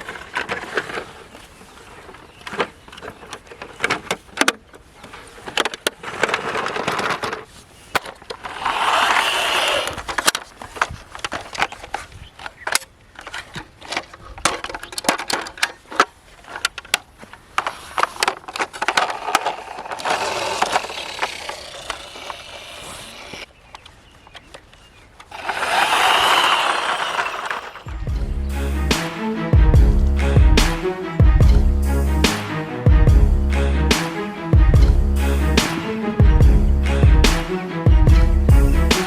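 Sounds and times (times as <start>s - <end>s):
toy vehicles clicking and knocking: 0.0s - 24.6s, 25.2s - 28.0s
toy wheels rolling on surface: 5.1s - 11.8s, 17.6s - 23.5s, 25.3s - 28.0s.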